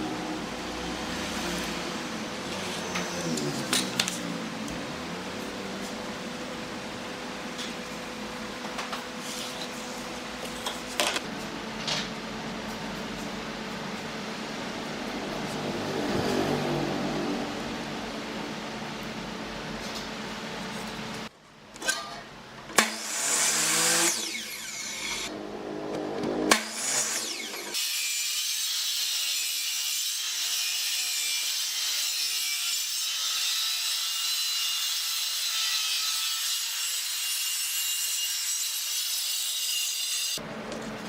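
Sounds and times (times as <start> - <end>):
high-pitched sawing noise: 2.3 - 4.3.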